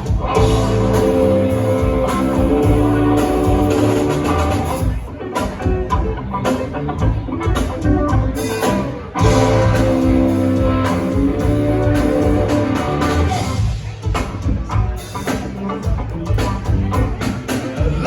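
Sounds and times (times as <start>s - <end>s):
sustained guitar chords: 0.0s - 4.9s, 9.2s - 13.6s
live rock band playing: 0.0s - 18.0s.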